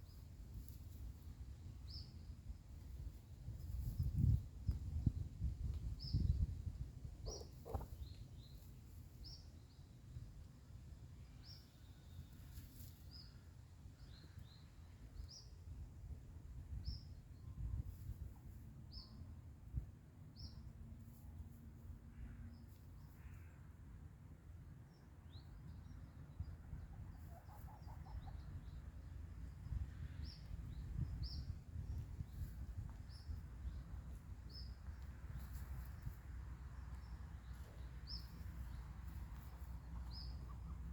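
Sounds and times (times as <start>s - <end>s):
small birds chirping: 3.6s - 6.6s, 7.2s - 9.9s, 24.9s - 40.9s.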